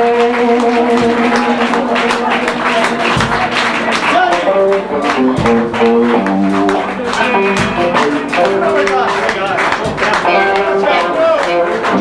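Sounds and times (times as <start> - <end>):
blues band playing live: 0.0 - 12.0
steady drum beat: 0.0 - 12.0.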